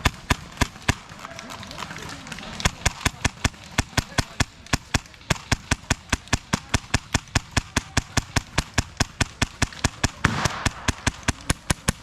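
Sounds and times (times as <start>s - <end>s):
airsoft gun firing: 0.0s - 1.4s, 2.6s - 12.0s.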